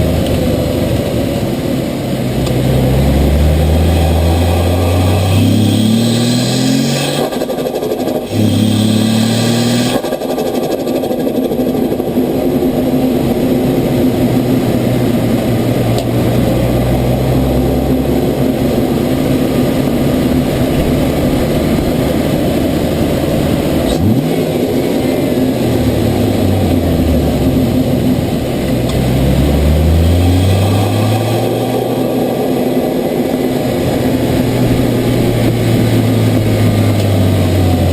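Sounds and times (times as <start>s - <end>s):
turbocharged car engine revving: 0.0s - 37.9s.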